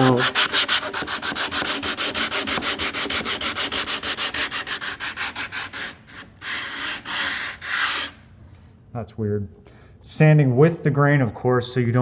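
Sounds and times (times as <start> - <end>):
sandpaper scraping wood: 0.0 - 8.2.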